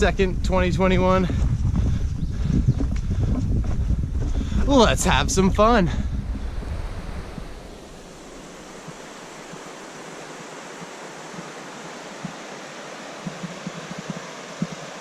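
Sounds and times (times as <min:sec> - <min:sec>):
wind buffeting microphone: 0:00.0 - 0:12.5
outdoor rushing hiss: 0:06.6 - 0:15.0.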